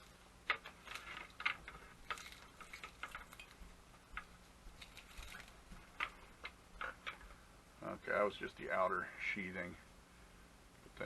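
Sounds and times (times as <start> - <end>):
cable clicking and scraping in tool: 0.0 - 7.4.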